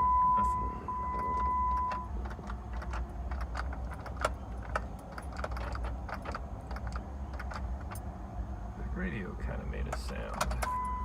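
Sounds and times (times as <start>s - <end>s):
steady electronic beep: 0.0s - 2.1s, 10.7s - 11.0s
keys jingling in ignition: 0.9s - 8.1s.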